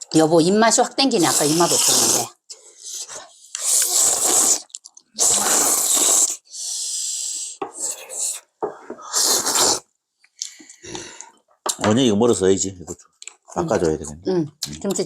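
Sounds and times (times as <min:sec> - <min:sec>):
slurping and chewing: 0:01.2 - 0:08.5, 0:09.1 - 0:11.4.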